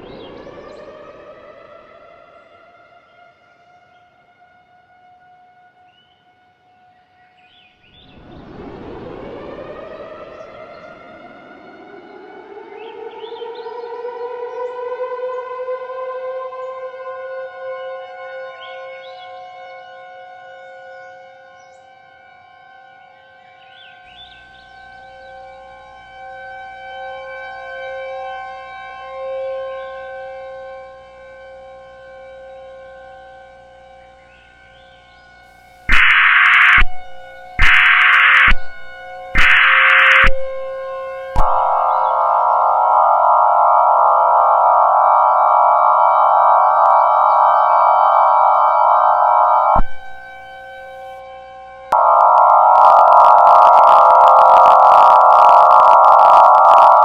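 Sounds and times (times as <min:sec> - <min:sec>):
siren steady tone: 0:00.0 - 0:03.1, 0:08.2 - 0:21.6, 0:24.2 - 0:34.2, 0:35.9 - 0:57.0
buzzy electronic alarm tone: 0:35.9 - 0:51.0, 0:51.9 - 0:57.0.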